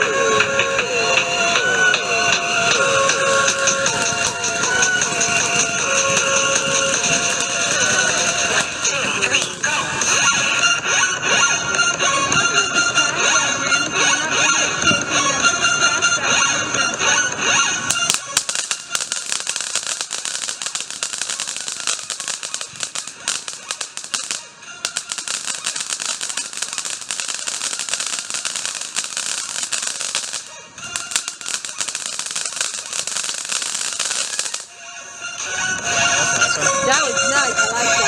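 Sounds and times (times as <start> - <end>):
firework crackling: 0.0 - 38.0.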